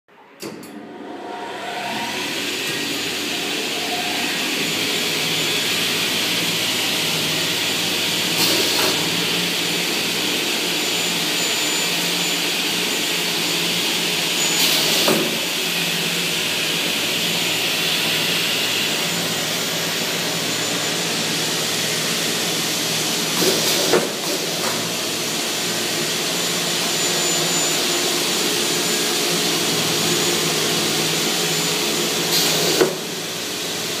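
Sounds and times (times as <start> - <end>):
saw whining: 0.9 - 8.4.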